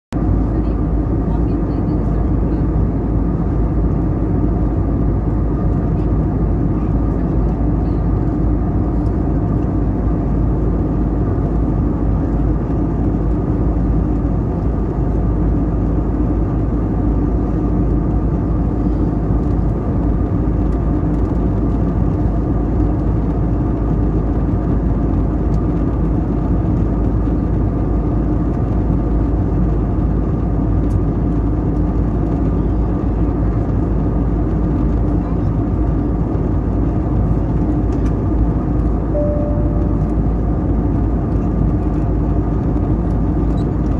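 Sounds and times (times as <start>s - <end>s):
jet engine cabin drone: 0.2s - 43.9s
steady hum tones: 38.2s - 42.4s.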